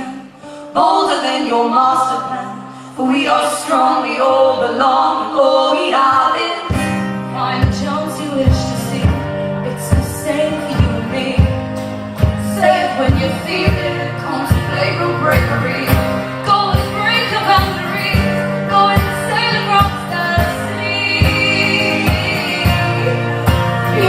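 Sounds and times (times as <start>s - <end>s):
live band playing: 6.7s - 24.0s.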